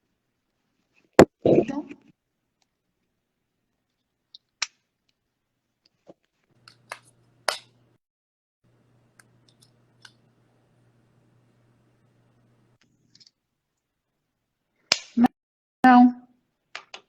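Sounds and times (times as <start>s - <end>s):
faint low hum: 8.7s - 13.1s.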